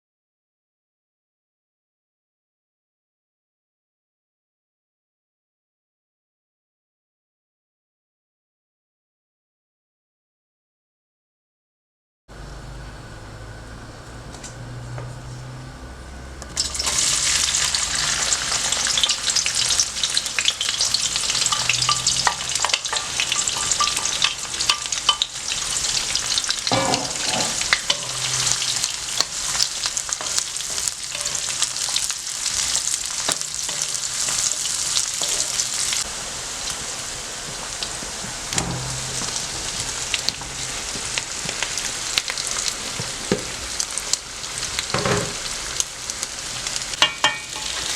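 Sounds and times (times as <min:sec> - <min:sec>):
food sizzling in hot oil: 0:16.5 - 0:47.9.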